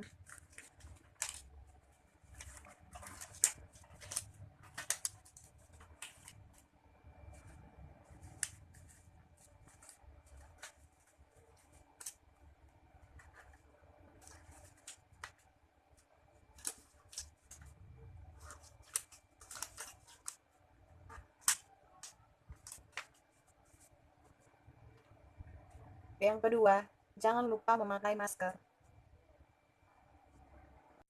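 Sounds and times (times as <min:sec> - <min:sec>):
rubber gloves rustling and crinkling: 0:00.0 - 0:26.0.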